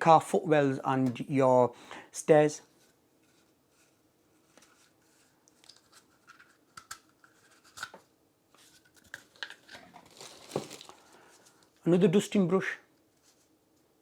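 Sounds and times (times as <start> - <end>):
faint rustling of wrapping: 2.6 - 7.8, 8.5 - 11.9, 13.1 - 13.9.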